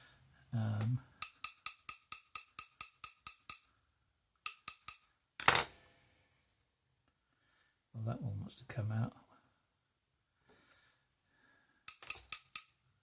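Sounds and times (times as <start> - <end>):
metallic taps on a padlock: 1.2 - 3.7, 4.5 - 5.0, 11.9 - 12.7.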